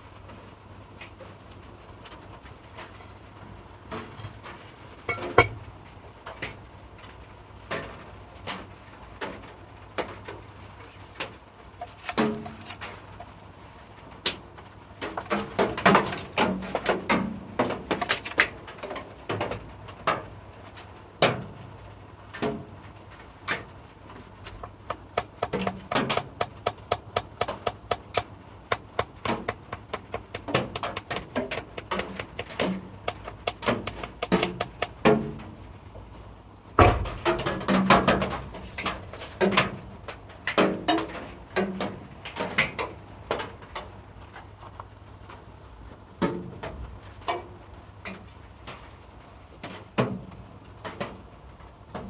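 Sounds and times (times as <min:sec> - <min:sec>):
tool knocks and clicks: 0:05.0 - 0:05.7, 0:11.8 - 0:13.3, 0:15.1 - 0:19.6, 0:24.5 - 0:35.5, 0:36.8 - 0:39.7.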